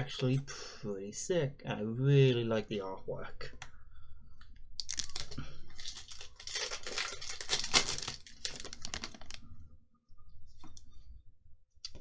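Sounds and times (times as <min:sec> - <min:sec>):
foil wrapper crinkling: 0:04.8 - 0:09.5.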